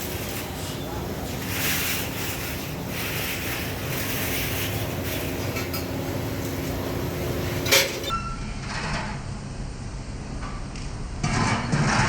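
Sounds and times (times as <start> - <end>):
workshop machine hum: 0.0 - 8.1.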